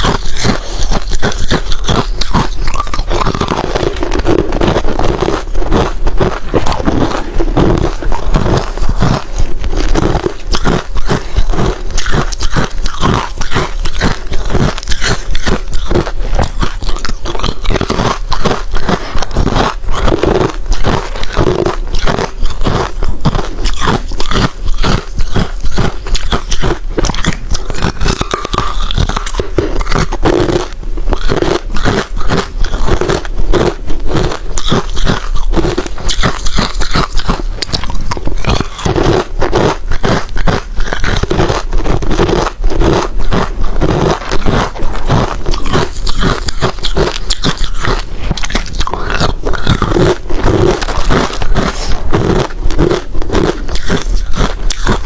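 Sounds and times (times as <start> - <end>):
chewing crushed ice: 0.0 - 55.0.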